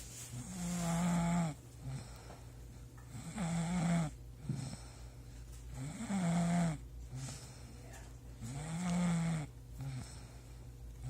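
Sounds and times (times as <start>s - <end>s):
snort: 0.3s - 2.2s, 3.1s - 5.0s, 5.7s - 7.6s, 8.4s - 10.3s
loud snoring: 0.4s - 2.1s, 3.1s - 4.8s, 5.7s - 6.8s, 8.4s - 10.2s
breath: 1.8s - 2.8s, 4.4s - 5.6s, 7.1s - 8.0s, 9.8s - 10.7s.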